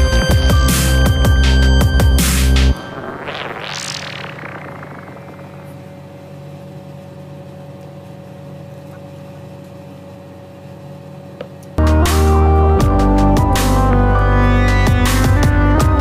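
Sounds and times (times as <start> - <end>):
held synth drone: 0.0 - 6.5.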